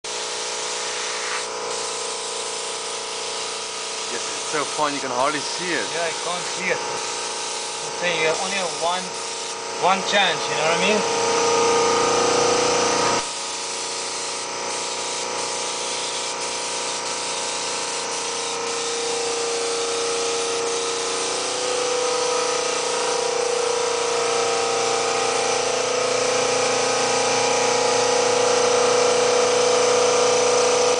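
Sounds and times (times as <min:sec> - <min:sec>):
paint spray hiss: 0:00.1 - 0:09.6, 0:13.2 - 0:24.1
sprayer motor whine: 0:00.1 - 0:30.9.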